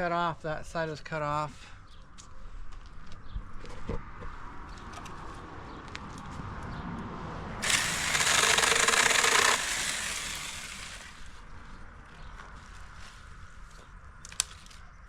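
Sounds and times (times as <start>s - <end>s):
chainsaw cutting branch: 7.6s - 11.2s
electric chainsaw motor running: 7.6s - 11.2s.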